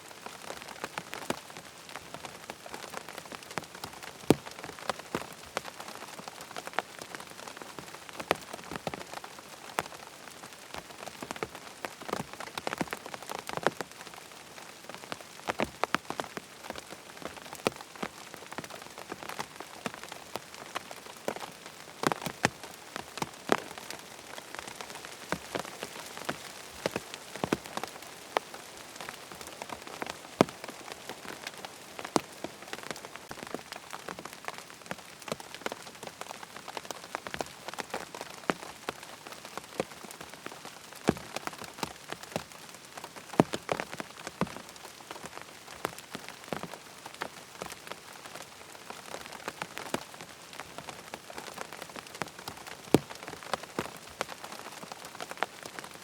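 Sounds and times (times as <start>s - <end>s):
raindrops tapping on tent fabric: 0.0s - 56.0s
rain hissing: 0.1s - 39.8s.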